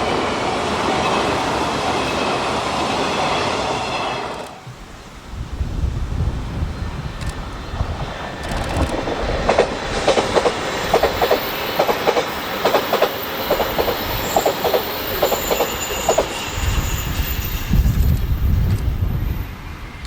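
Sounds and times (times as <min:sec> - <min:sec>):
train rumble: 0:00.0 - 0:20.0
train wheels clacking: 0:07.2 - 0:20.0.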